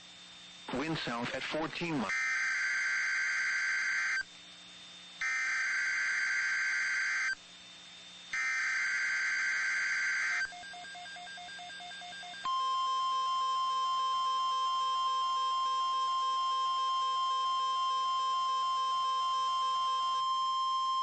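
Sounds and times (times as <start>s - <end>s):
buzzy digital data tones: 5.2s - 7.4s, 8.4s - 21.0s.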